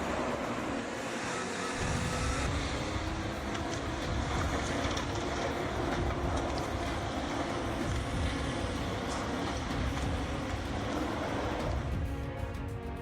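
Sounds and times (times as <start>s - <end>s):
heavy machine engine rumbling: 0.0s - 13.0s.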